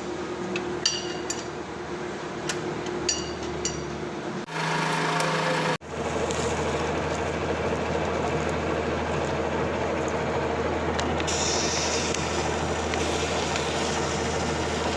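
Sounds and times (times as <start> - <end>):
lathe running: 4.5 - 14.9.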